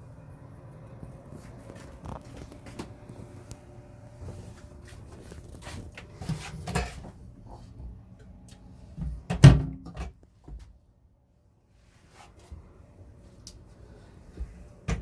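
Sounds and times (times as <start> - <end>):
knocks and clatter of handling: 5.4 - 7.9.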